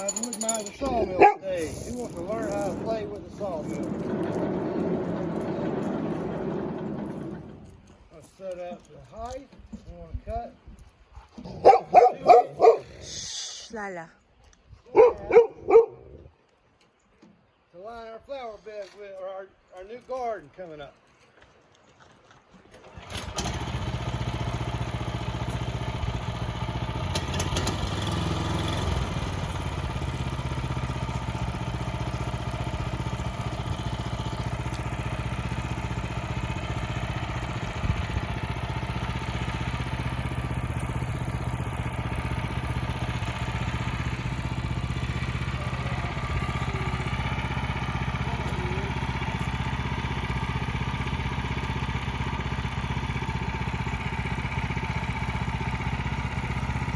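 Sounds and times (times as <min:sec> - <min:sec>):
band sawmill running: 0:00.0 - 0:08.7, 0:22.8 - 0:56.9.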